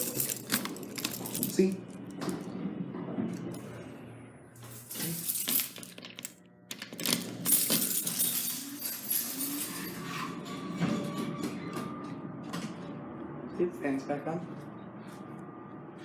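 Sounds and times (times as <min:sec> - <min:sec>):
metallic clinks and rattles: 0:00.0 - 0:01.8, 0:04.6 - 0:10.0.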